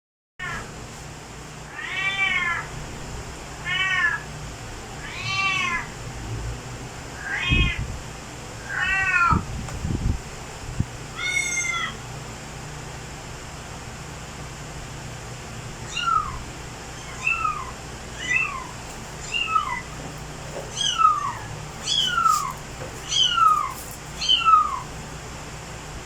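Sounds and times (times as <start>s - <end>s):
cat meowing: 1.7s - 2.7s, 3.6s - 4.2s, 5.0s - 5.9s, 7.2s - 7.8s, 8.6s - 9.5s, 11.1s - 12.0s, 15.9s - 20.0s, 20.7s - 24.9s.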